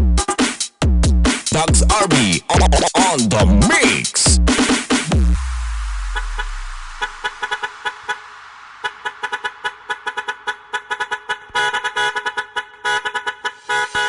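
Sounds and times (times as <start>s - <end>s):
truck horn toots: 6.0s - 8.2s, 8.8s - 14.0s.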